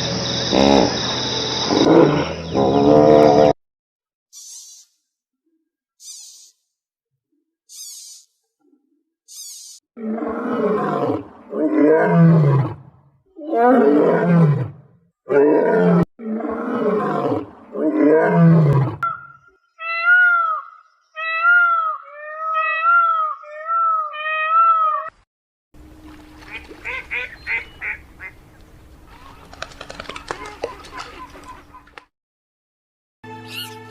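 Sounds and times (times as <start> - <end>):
short high animal calls: 6.0 - 6.6, 9.3 - 9.8, 33.5 - 33.8
drawn-out falling animal calls: 19.0 - 25.1, 26.0 - 28.4, 29.1 - 32.0.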